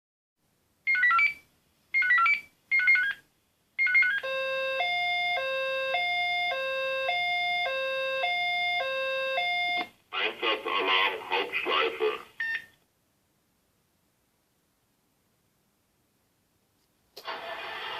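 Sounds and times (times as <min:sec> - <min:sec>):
two-tone fire-engine siren: 0:04.2 - 0:09.9.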